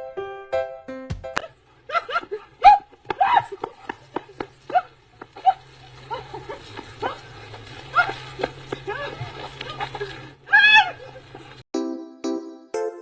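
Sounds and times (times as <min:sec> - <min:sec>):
animal yelping: 0:04.7 - 0:11.2.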